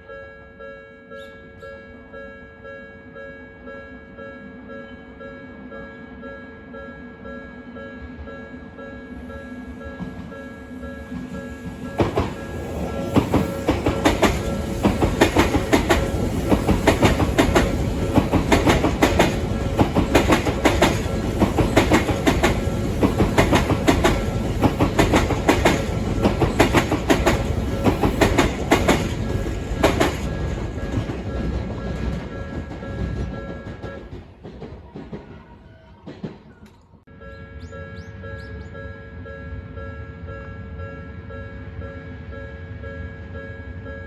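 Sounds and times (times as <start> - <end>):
level crossing warning bell: 0.0 - 34.3, 37.1 - 44.0
train rumble: 8.7 - 37.1
train wheels clattering over joints: 11.1 - 36.9.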